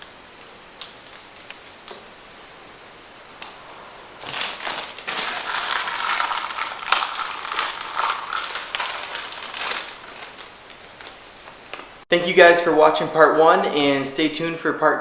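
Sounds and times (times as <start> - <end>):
parts rustling and scratching: 3.6 - 12.0.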